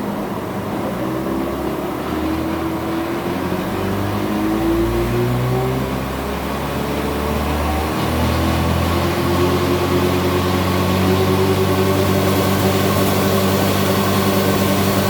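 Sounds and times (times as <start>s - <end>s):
engine running with whine: 0.0s - 15.0s.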